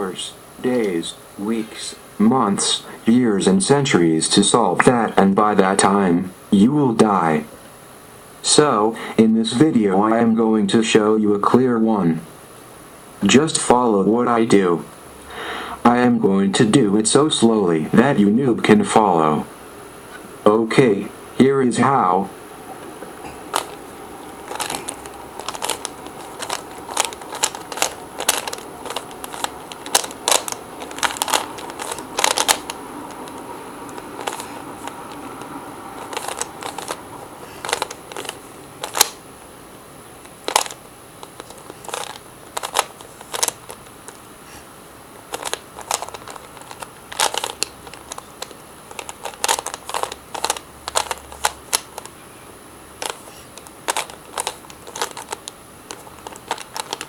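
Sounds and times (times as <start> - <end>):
steady background hiss: 0.0 - 57.0
plastic puzzle cube clicking: 23.5 - 23.8, 24.5 - 39.2, 40.2 - 44.2, 45.3 - 52.1, 53.0 - 57.0.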